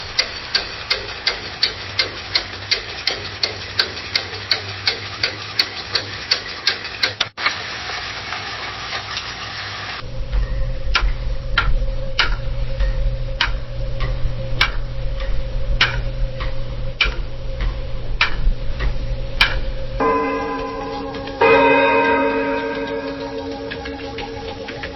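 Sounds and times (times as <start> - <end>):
fast clock ticking: 0.0 - 7.3, 11.0 - 24.9
slow clock ticking: 0.0 - 7.3, 10.3 - 24.9
low hum: 10.0 - 24.9
ringing tone: 10.4 - 11.4, 20.0 - 24.9.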